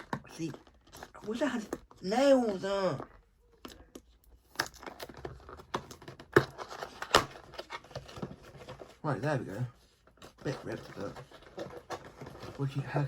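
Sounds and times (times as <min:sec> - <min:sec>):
cardboard tearing and crinkling: 0:04.5 - 0:09.2, 0:10.2 - 0:13.0.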